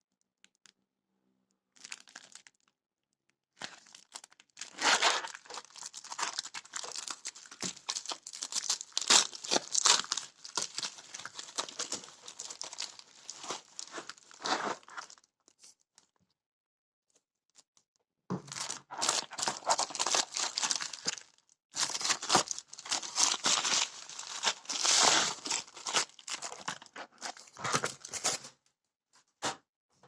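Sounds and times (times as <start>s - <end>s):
packaging crinkling and tearing: 1.8s - 2.6s, 3.6s - 15.2s, 18.5s - 28.5s.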